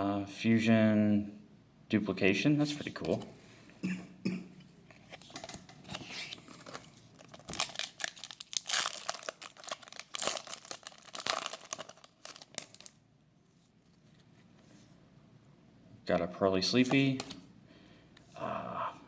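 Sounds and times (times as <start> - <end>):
foil wrapper tearing and crinkling: 6.6 - 13.0.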